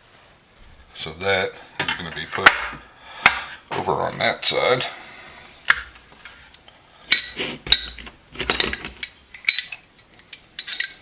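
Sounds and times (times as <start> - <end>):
metal sockets clinking: 7.1 - 11.0.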